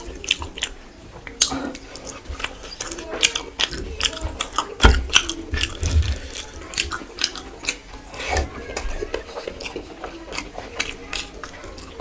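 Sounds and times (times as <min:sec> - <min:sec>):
person chewing: 0:00.0 - 0:12.0.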